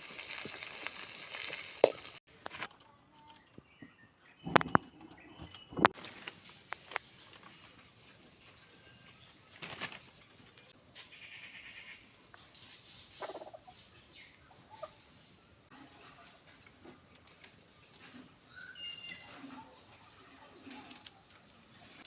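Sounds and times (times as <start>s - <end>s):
steady hiss: 0.0s - 2.5s, 6.0s - 9.2s
high bird chirps: 18.4s - 19.3s
small rustles and clicks: 19.2s - 22.0s.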